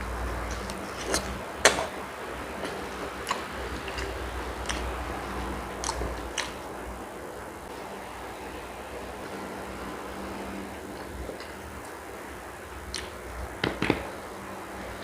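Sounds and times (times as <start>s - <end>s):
steady low hum: 0.0s - 15.0s
chewing mouth clicks and smacks: 5.8s - 6.6s.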